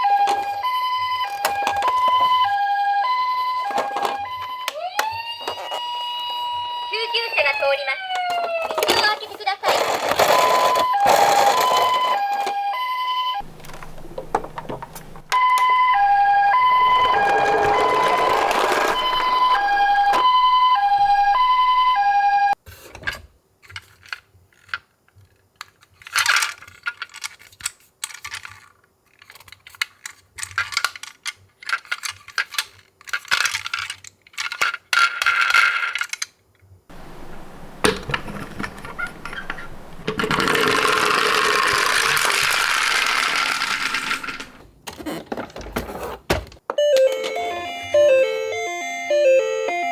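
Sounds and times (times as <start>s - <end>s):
toy siren two-tone wail: 0.0s - 9.1s, 9.8s - 13.4s, 15.3s - 22.6s, 46.8s - 49.9s
small plastic clicks and rattles: 23.6s - 44.5s.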